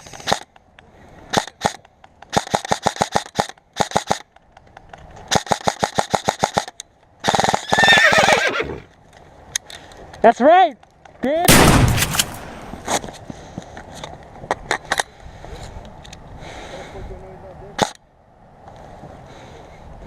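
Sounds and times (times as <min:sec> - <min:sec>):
airsoft guns firing: 0:11.4 - 0:13.1.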